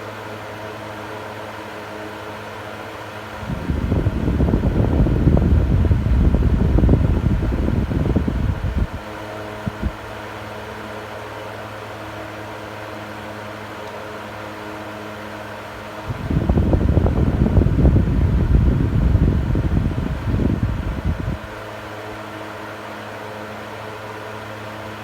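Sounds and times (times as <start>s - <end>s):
electric fan motor hum: 0.0s - 25.0s
wind buffeting microphone: 3.4s - 10.0s, 16.0s - 21.6s.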